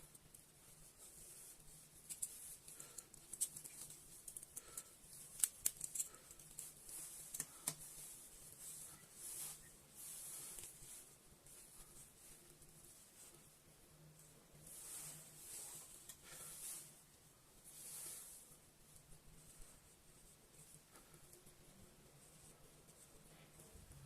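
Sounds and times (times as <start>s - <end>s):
small clicks and light scraping: 0.0s - 8.1s.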